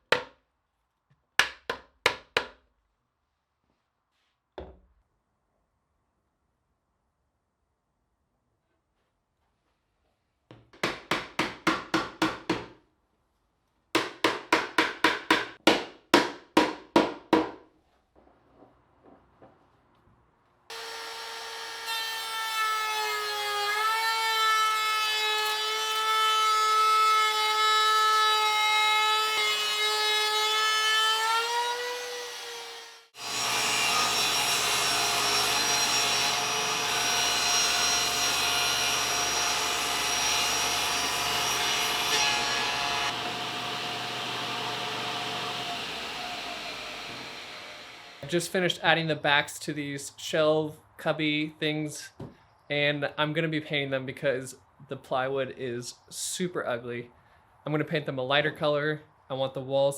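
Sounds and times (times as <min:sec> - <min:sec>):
hand saw cutting wood: 0:20.7 - 0:48.3
power tool motor running: 0:33.2 - 0:48.2.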